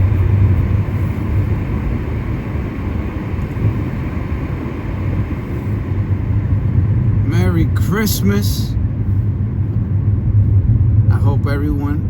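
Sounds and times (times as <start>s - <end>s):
car engine and road rumble: 0.0s - 12.0s.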